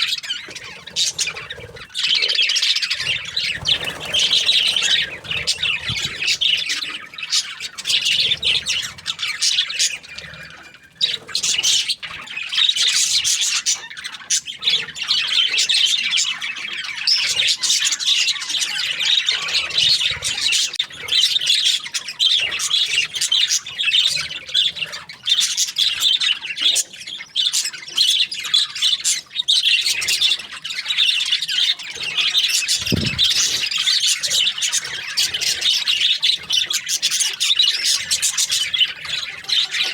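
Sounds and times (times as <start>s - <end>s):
budgerigars chattering and squawking: 0.0s - 39.9s.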